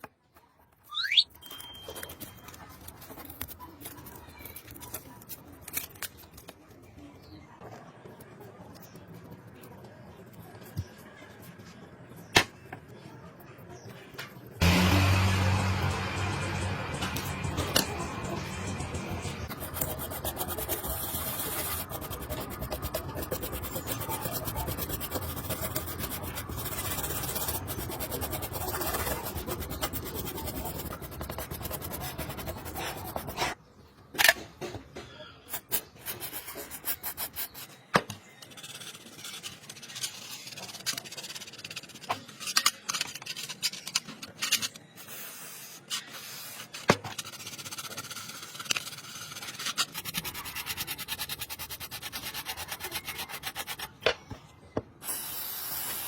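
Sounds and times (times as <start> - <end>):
rubbing and rasping: 17.4 - 33.6, 35.6 - 37.8, 46.0 - 54.0.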